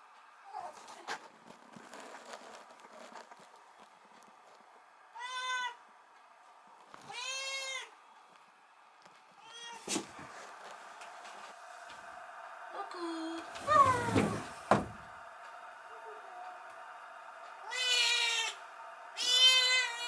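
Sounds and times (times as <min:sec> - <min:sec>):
kitten meowing: 0:19.2 - 0:20.0.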